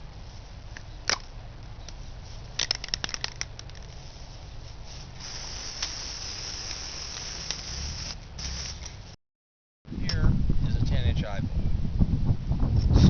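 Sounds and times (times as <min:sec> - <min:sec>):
aerosol can clicks and rattles: 0:02.5 - 0:04.0, 0:05.2 - 0:09.0
spray paint hissing: 0:02.6 - 0:09.2.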